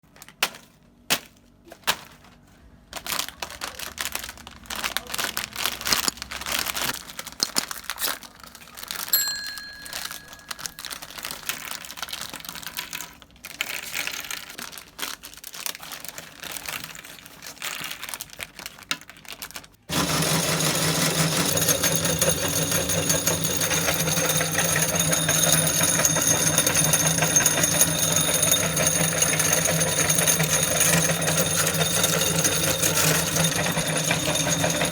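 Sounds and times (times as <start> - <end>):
handling crackles and clicks: 3.0 - 9.2
short ding: 9.2 - 10.8
electric meat grinder whirring: 19.9 - 34.9.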